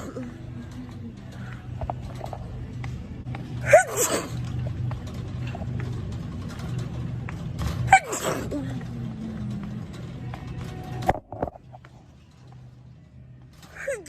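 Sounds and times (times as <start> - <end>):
low hum: 0.0 - 14.0
woman sneezing: 7.9 - 8.6.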